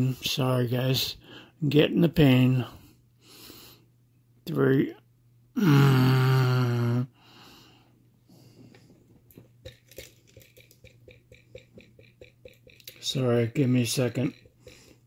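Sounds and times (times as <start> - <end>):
man groaning: 5.6 - 7.1.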